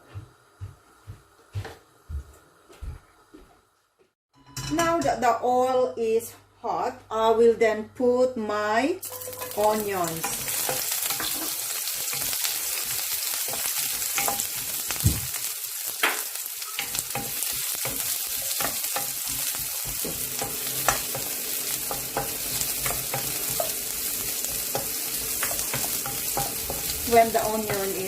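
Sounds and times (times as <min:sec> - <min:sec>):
onions sizzling in a frying pan: 0:09.0 - 0:28.0.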